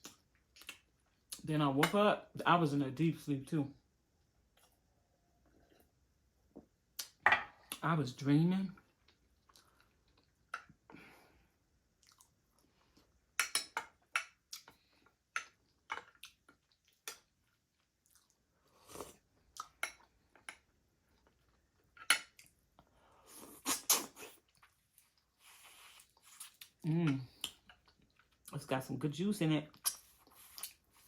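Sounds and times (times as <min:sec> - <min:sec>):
person chewing meat: 0:11.9 - 0:12.8, 0:14.3 - 0:21.6.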